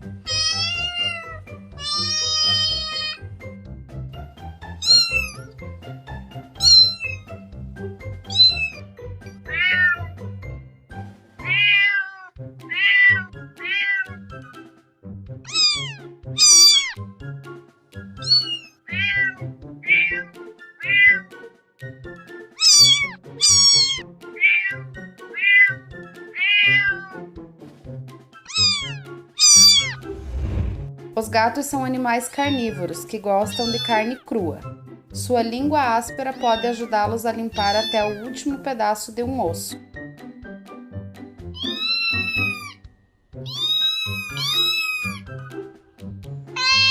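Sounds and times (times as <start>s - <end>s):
cat meowing: 0.2s - 3.3s, 4.8s - 5.5s, 6.6s - 7.3s, 8.2s - 10.2s, 11.4s - 14.3s, 15.5s - 17.0s, 18.2s - 21.4s, 22.6s - 27.3s, 28.5s - 30.1s, 32.4s - 34.3s, 36.4s - 36.9s, 37.5s - 38.4s, 41.5s - 45.6s, 46.5s - 46.9s.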